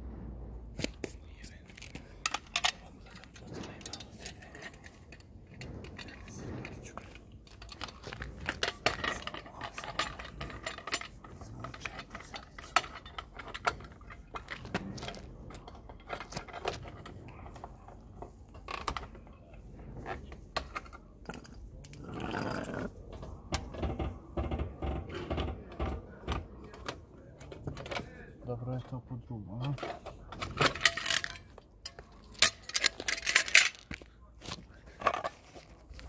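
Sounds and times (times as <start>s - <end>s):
metal tools clicking and clattering: 1.8s - 19.2s, 29.6s - 34.1s.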